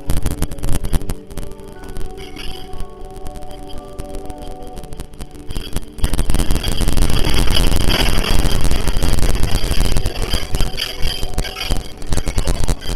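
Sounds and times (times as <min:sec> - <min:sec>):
things rattling and clattering: 0:06.0 - 0:12.9.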